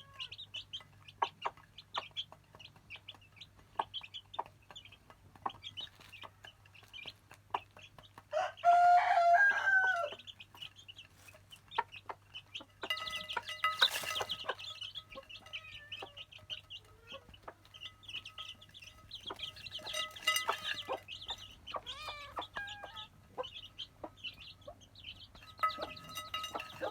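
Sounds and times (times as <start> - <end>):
chickens clucking: 0.0 - 26.9
rooster crowing: 8.3 - 10.2.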